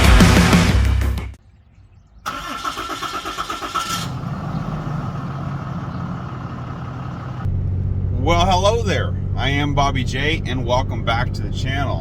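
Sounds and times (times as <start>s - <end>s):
vehicle engine cranking and idling: 2.3s - 12.0s.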